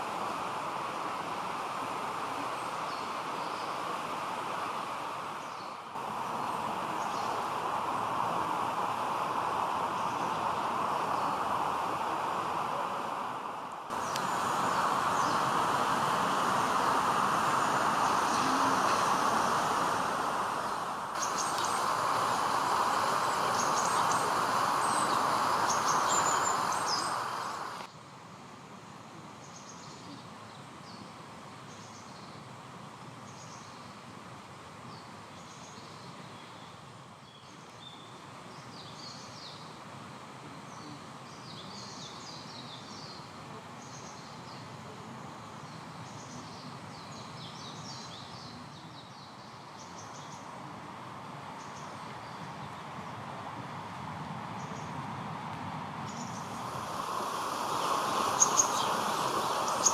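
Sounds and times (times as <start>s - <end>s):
outdoor ambience hiss: 0.0s - 59.9s
small birds chirping: 5.4s - 8.2s, 13.9s - 27.9s, 56.1s - 59.9s.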